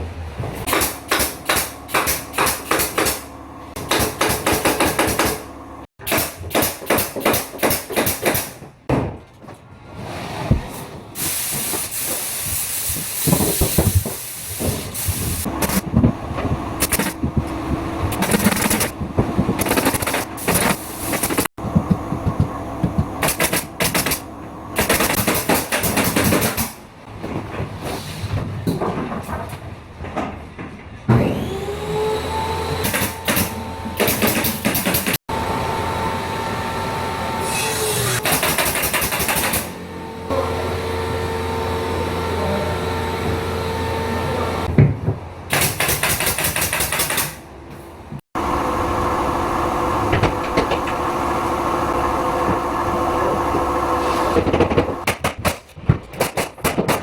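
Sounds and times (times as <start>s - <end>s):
sharp clicks and knocks: 13.2s - 26.8s, 54.4s - 57.0s.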